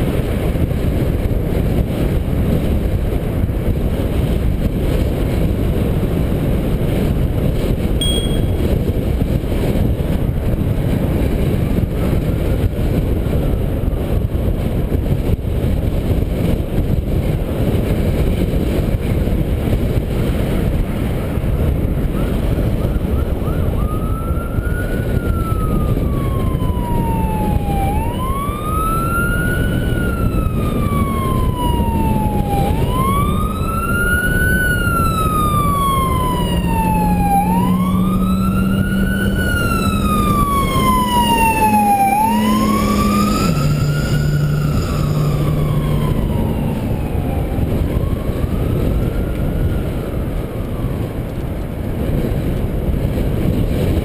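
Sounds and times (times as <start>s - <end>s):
wind rumble on microphone: 0.0s - 54.0s
emergency siren wailing: 21.4s - 52.2s.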